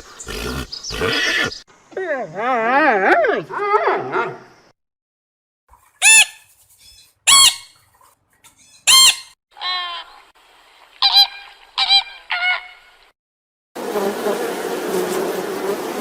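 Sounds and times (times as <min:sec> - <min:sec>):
poultry squawking: 0:06.0 - 0:10.1.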